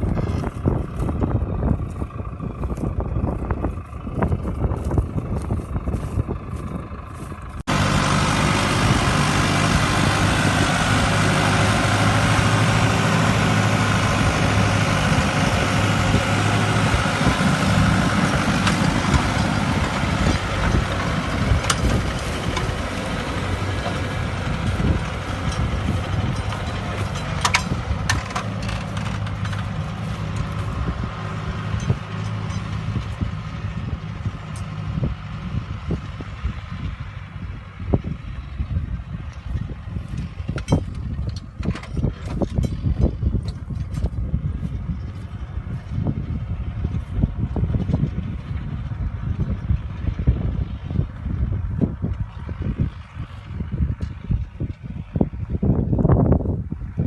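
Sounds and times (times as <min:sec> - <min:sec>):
tractor diesel engine under load: 0:00.0 - 0:57.0
sharp clicks and rattles: 0:16.8 - 0:33.4, 0:39.3 - 0:44.2.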